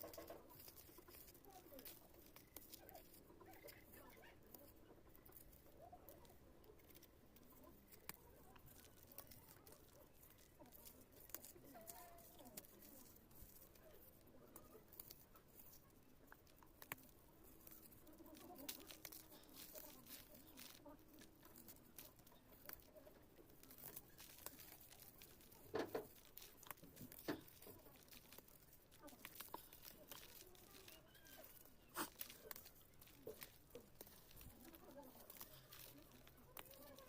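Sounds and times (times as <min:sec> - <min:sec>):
dry clay crunching: 0:00.0 - 0:37.0.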